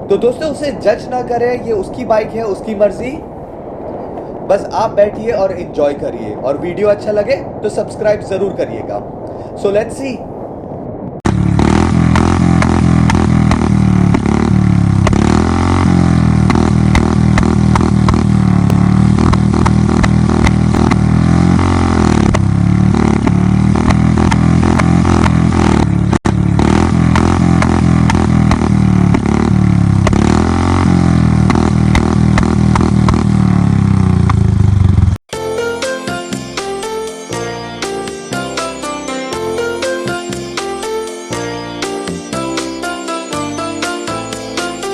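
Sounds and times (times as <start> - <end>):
sharp exhaust pops: 11.2 - 35.2
motorcycle engine revving: 11.3 - 35.2.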